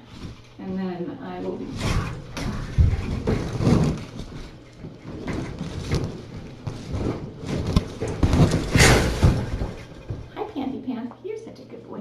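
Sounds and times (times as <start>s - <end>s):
thumps and rustling of handling: 1.5s - 10.4s.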